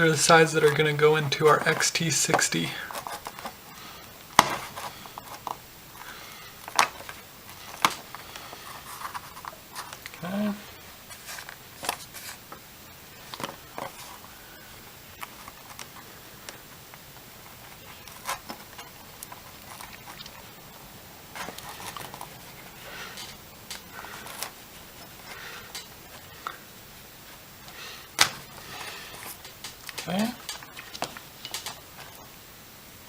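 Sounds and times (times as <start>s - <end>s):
wire strippers clicking and scraping: 0.0s - 5.6s, 15.1s - 26.7s, 27.6s - 32.3s.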